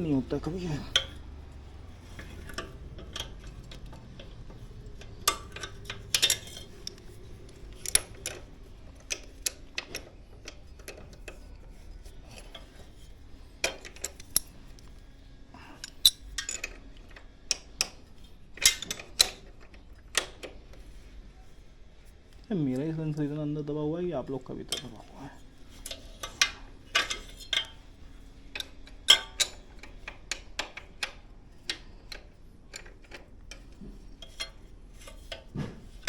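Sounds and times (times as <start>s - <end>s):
metal tools clinking: 0.0s - 11.4s, 15.7s - 16.8s.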